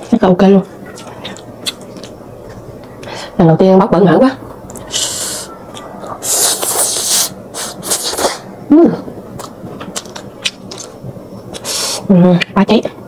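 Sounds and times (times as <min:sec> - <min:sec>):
slurping noodles: 0:06.2 - 0:08.4
chewing crispy food: 0:09.4 - 0:11.9.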